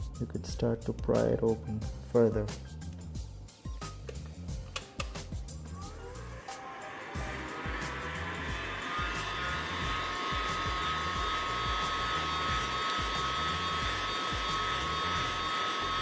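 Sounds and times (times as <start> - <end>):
background music: 0.0 - 16.0
heat gun blowing with faint whine: 7.1 - 16.0.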